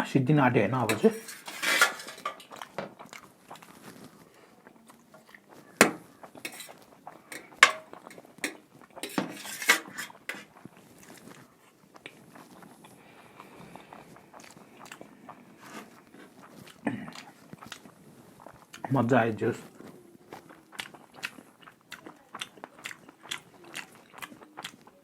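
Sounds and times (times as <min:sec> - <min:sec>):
eating and chewing: 0:00.8 - 0:25.0
cutlery clinking against a dish: 0:00.9 - 0:02.9, 0:05.8 - 0:10.5.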